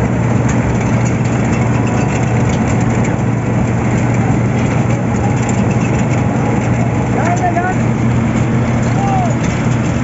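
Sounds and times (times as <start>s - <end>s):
heavy diesel engine humming: 0.0s - 10.0s.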